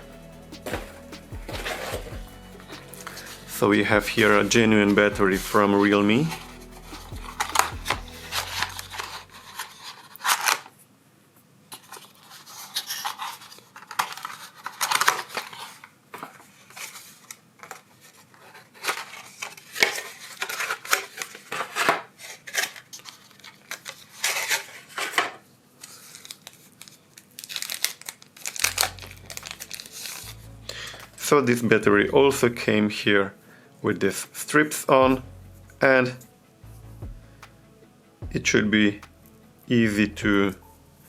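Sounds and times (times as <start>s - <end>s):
plastic packaging crinkling: 11.8s - 31.7s.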